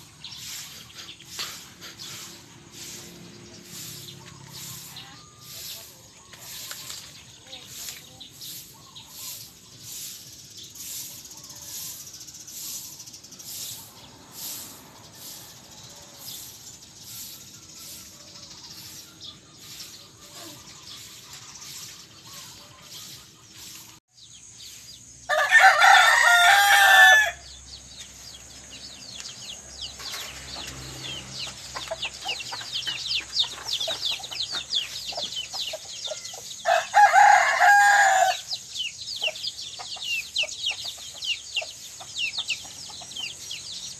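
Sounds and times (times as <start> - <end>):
small birds chirping: 0.0 - 43.9
rooster crowing: 25.3 - 27.5, 36.6 - 38.5.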